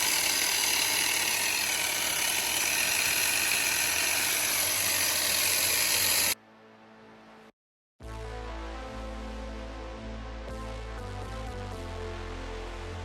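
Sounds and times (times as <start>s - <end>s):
electric grinder whining: 0.0s - 6.4s.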